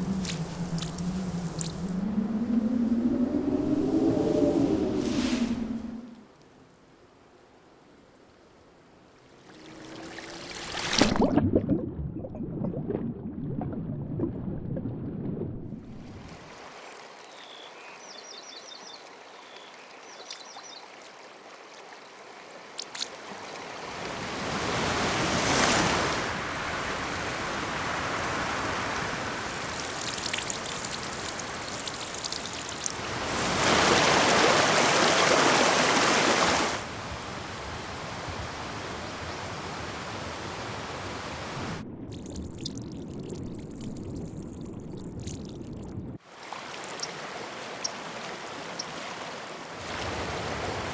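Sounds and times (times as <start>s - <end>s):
rushing surging water: 0.0s - 2.1s, 20.8s - 41.8s, 46.2s - 50.9s.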